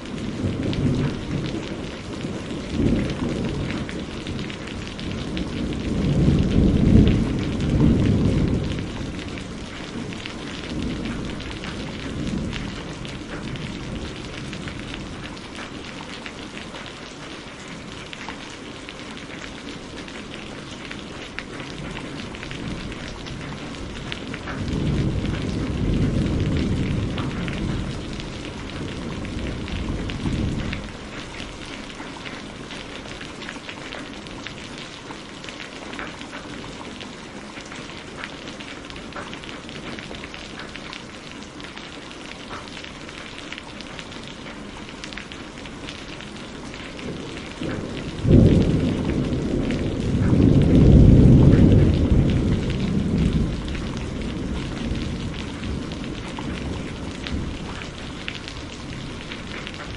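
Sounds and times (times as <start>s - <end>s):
thunder rumble: 0.0s - 16.4s, 20.0s - 34.2s, 44.4s - 59.9s
steady rain falling: 0.0s - 59.9s
sharp thunderclap: 0.3s - 1.6s, 5.2s - 15.2s, 21.8s - 31.0s, 47.0s - 57.9s.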